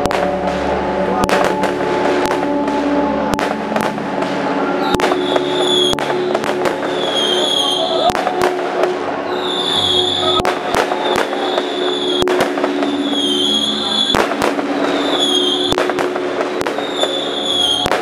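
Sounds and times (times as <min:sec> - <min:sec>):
firework bangs: 0:00.0 - 0:18.0
firework whistling: 0:04.8 - 0:08.6, 0:09.3 - 0:18.0.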